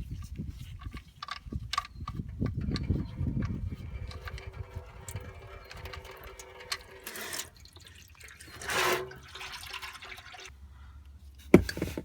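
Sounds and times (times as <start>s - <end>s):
oil pouring into a drain pan: 2.6s - 10.5s.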